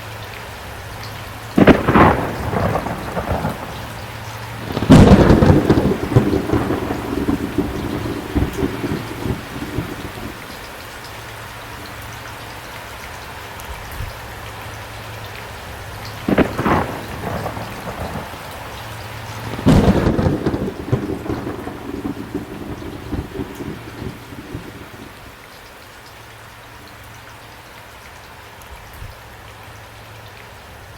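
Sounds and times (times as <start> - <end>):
heavy rain: 0.0 - 30.9
rolling thunder: 1.6 - 10.6, 16.2 - 25.4
sharp thunderclap: 1.6 - 10.6, 16.3 - 25.3.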